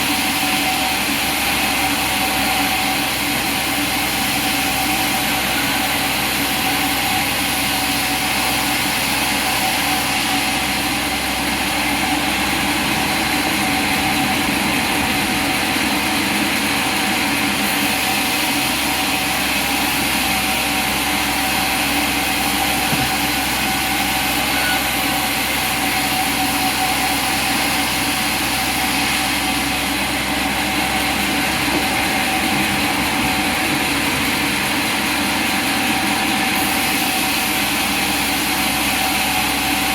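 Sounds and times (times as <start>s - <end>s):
sawmill machinery drone: 0.0s - 39.9s
constant hum: 9.2s - 39.9s.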